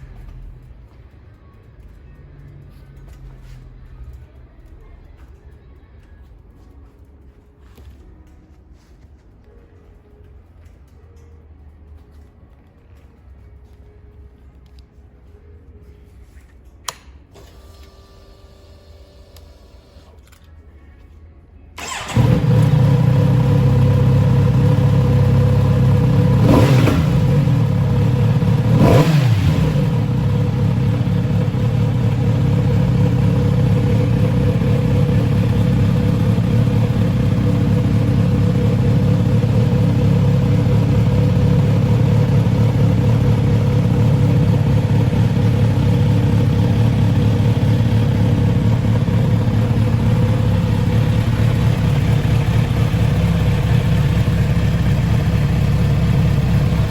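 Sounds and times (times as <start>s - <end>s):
motorcycle engine revving and idling: 21.8s - 56.9s.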